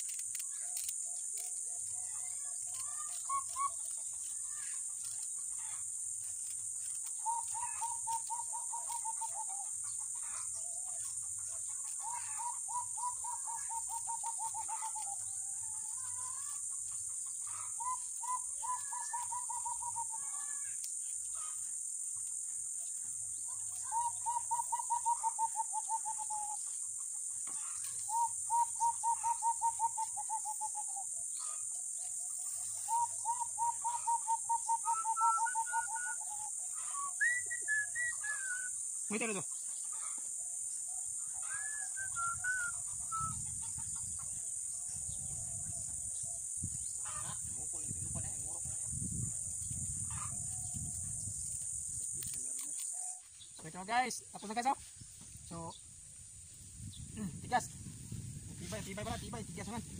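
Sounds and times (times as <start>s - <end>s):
insects droning: 0.0s - 59.9s
bird trilling: 2.2s - 5.8s, 6.8s - 10.5s, 12.0s - 15.3s, 17.4s - 20.8s, 23.8s - 26.6s, 27.6s - 31.6s, 32.8s - 40.2s, 41.3s - 44.2s.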